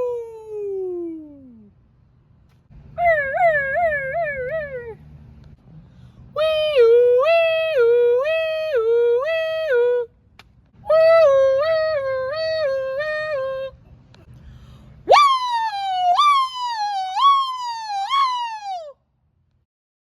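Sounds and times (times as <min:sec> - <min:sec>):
person imitating a siren: 0:00.0 - 0:01.7, 0:03.0 - 0:05.0, 0:06.4 - 0:10.1, 0:10.9 - 0:13.8, 0:15.1 - 0:19.0.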